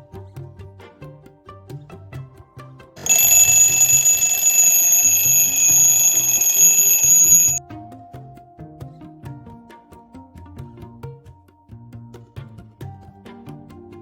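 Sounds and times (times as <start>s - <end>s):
alarm clock ringing: 3.0s - 7.6s.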